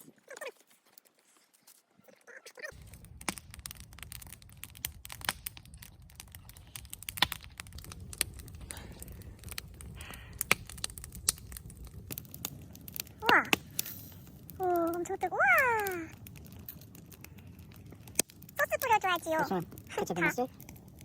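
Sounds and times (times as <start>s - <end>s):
campfire crackling: 0.0s - 21.0s
steady low rumble: 2.8s - 15.3s.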